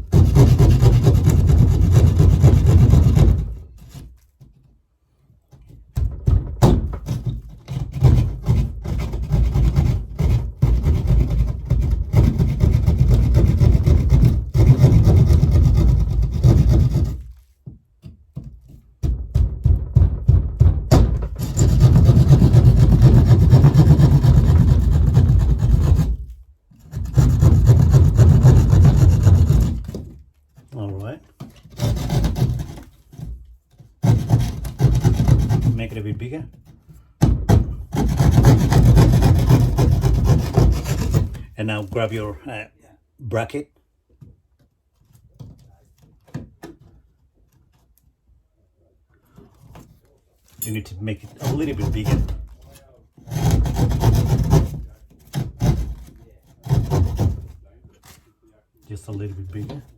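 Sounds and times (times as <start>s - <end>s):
hand saw cutting drywall: 0.0s - 4.4s, 6.6s - 17.5s, 20.9s - 42.2s, 50.7s - 58.3s.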